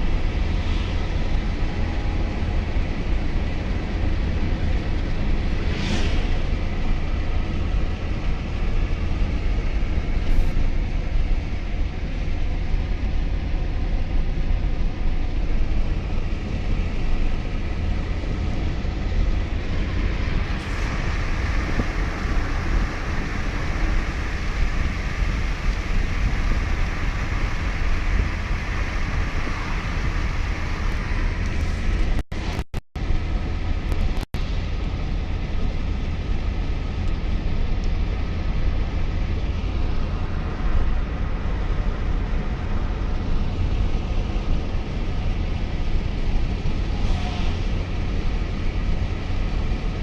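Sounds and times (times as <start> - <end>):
road and wind rumble: 0.0 - 50.0.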